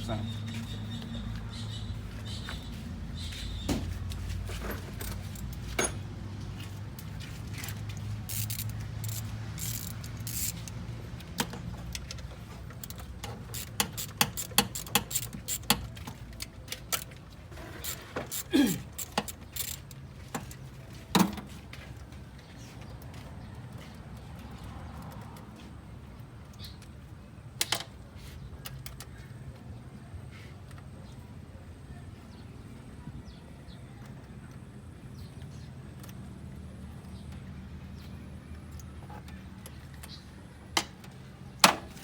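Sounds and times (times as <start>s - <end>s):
metallic clicks of tools: 7.0s - 17.2s, 17.8s - 21.4s.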